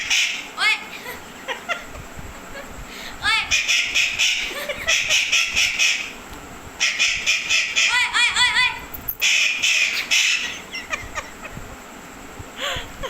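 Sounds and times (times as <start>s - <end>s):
parrot squawking: 0.0s - 0.5s, 3.3s - 6.2s, 6.8s - 10.8s
gliding bird calls: 3.4s - 6.2s, 6.8s - 11.4s.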